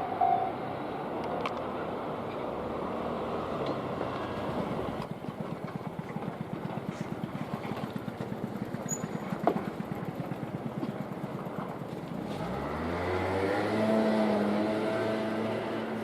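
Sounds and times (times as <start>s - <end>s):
passing train: 0.0s - 16.0s
vehicle engine idling: 4.2s - 12.4s.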